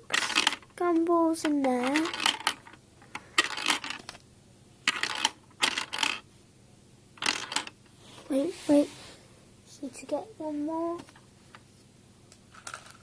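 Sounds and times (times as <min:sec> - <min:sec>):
gumballs clattering on plastic: 0:12.5 - 0:13.0.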